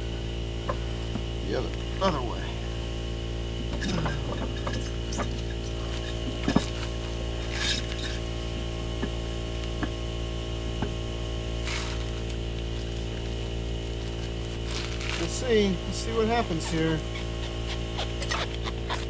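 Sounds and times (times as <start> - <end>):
steady hum: 0.0 - 19.0
tire scraping on rim: 3.7 - 10.1, 10.9 - 19.0.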